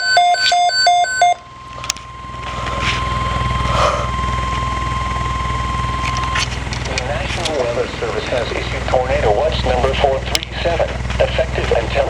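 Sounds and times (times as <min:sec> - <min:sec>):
electronic data tones: 0:00.0 - 0:07.2
steady alarm tone: 0:00.0 - 0:12.0
low electrical buzz: 0:01.4 - 0:12.0.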